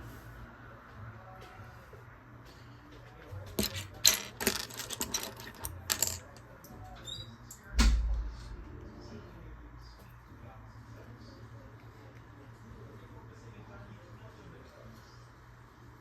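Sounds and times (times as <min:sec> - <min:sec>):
small clicks and rattles: 0:03.2 - 0:06.8
heavy thump: 0:07.7 - 0:08.6.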